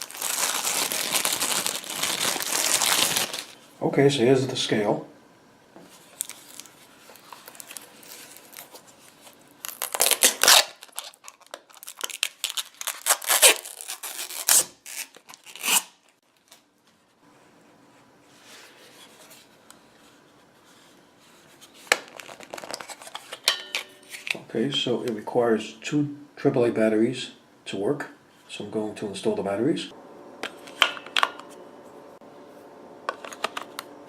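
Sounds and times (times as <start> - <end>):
packaging crinkling and tearing: 0.0 - 3.6, 6.0 - 16.6, 21.9 - 24.4.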